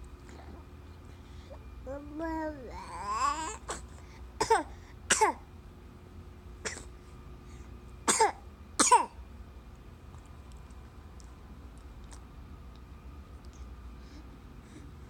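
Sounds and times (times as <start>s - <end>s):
baby coughing: 4.4s - 5.4s, 6.6s - 6.9s, 8.1s - 9.2s.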